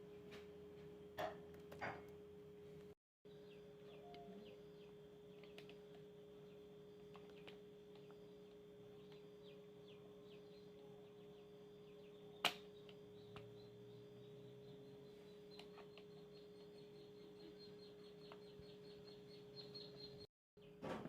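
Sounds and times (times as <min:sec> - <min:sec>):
faint steady hum: 0:00.0 - 0:20.3
faint high chirps: 0:03.3 - 0:20.3.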